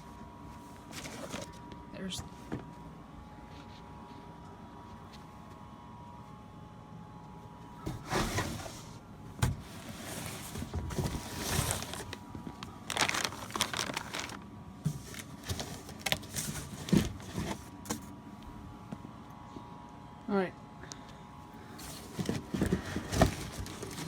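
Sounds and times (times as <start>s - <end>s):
cardboard box rustling and scraping: 0.8s - 1.6s, 7.8s - 12.2s, 12.9s - 17.8s, 21.8s - 24.0s.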